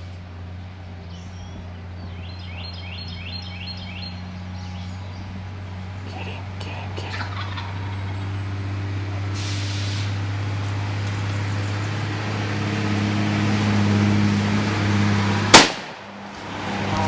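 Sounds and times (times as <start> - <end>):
truck engine running: 0.0 - 17.0
loud shotgun shot: 15.5 - 16.1.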